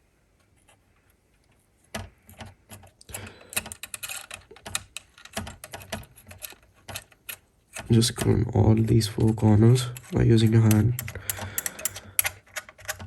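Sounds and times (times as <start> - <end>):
light metallic clicks of screws: 10.7 - 13.0.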